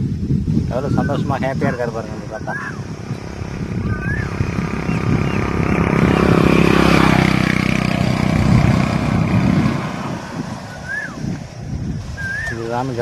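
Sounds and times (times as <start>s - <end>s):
vehicle engine running: 2.8s - 12.1s.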